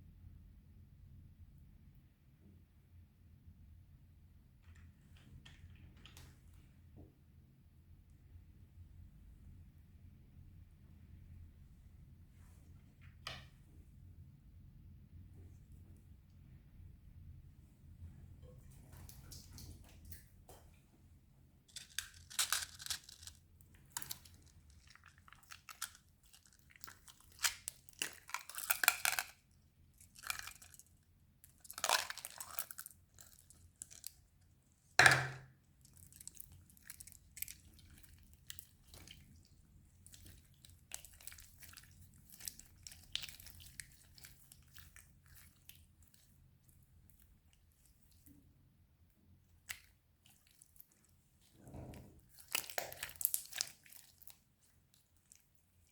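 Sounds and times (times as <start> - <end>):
slime squished by hand: 51.6 - 55.4.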